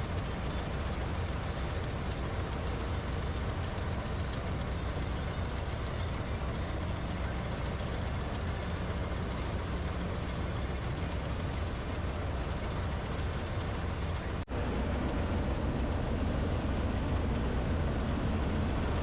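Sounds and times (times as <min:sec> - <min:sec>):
harvester engine running: 0:00.0 - 0:19.0.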